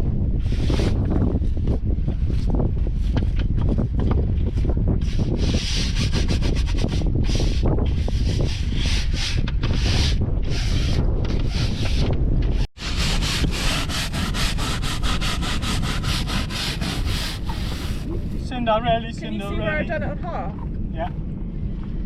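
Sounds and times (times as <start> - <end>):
deck brush scrubbing wet deck: 12.8 - 18.4.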